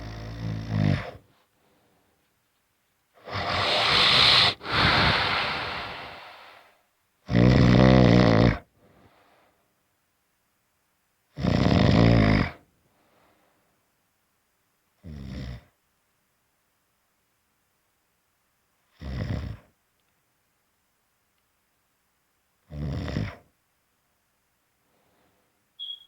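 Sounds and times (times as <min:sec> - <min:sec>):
loud rattling snoring: 0:03.2 - 0:06.5.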